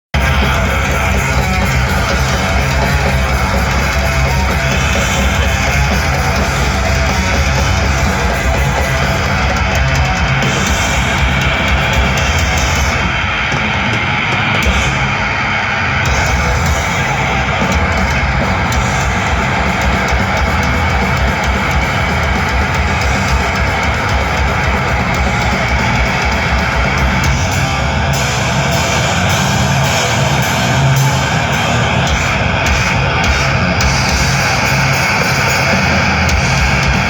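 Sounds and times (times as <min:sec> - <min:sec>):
distorted guitars: 0:00.0 - 0:37.0
drums: 0:00.0 - 0:37.0
bass guitar: 0:00.1 - 0:37.0.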